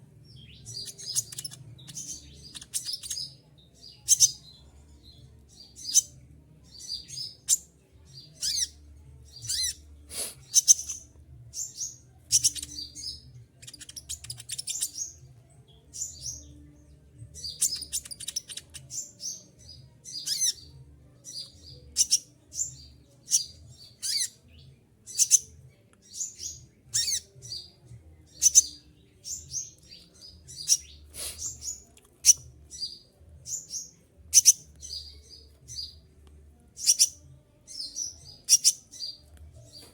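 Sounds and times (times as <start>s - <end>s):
sunbird chirping and trilling: 0.4s - 3.4s, 8.3s - 8.8s, 9.4s - 9.9s, 10.5s - 15.2s, 20.1s - 20.7s, 28.4s - 30.0s, 36.8s - 39.2s.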